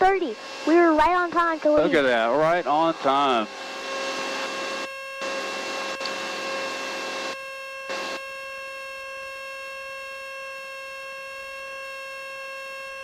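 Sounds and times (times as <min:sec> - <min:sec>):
aircraft engine and propeller drone: 0:00.0 - 0:07.3.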